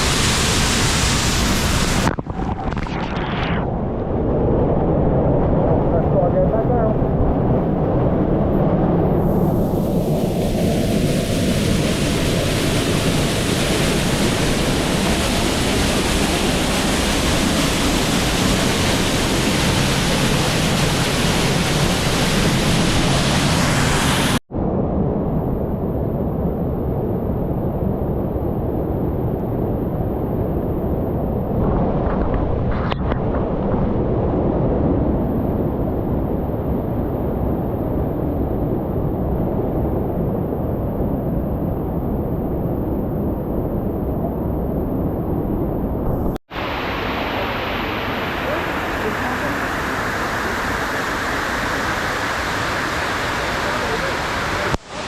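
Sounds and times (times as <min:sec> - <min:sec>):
waterfall roaring: 0:10.4 - 0:24.4, 0:46.5 - 0:55.0.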